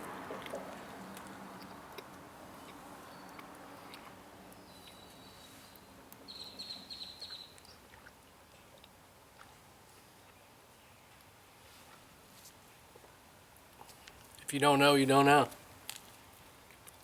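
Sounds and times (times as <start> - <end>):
faint outdoor background: 0.0 - 17.0
small bird chirping: 2.6 - 7.9.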